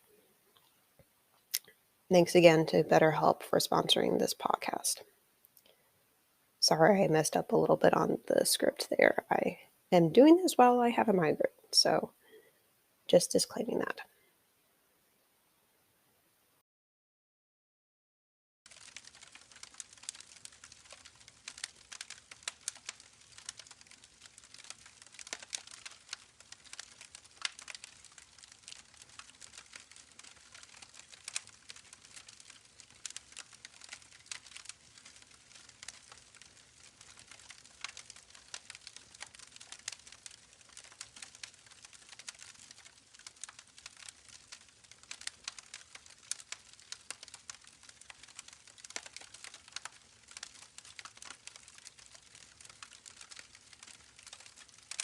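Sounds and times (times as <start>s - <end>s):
faint steady hiss: 0.0s - 16.6s, 18.7s - 55.0s
campfire crackling and popping: 18.7s - 55.0s.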